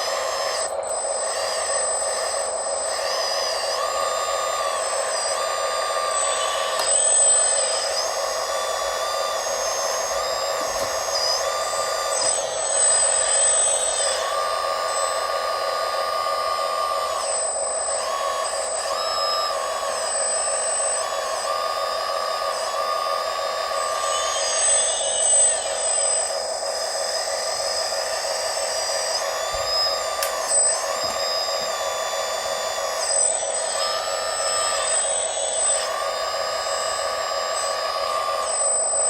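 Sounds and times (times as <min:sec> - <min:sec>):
small electric motors whining: 0:00.0 - 0:39.0.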